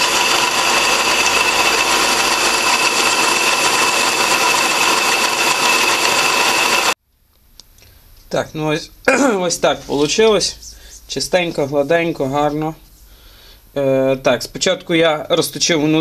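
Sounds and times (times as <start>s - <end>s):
lathe machining with high whine: 0.0s - 7.0s.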